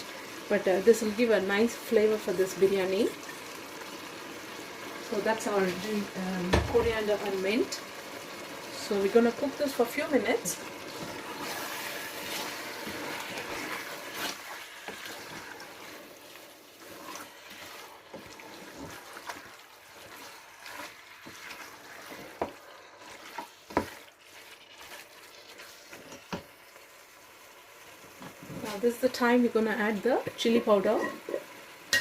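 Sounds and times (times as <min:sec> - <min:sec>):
food sizzling and bubbling in pot: 0:00.0 - 0:32.0.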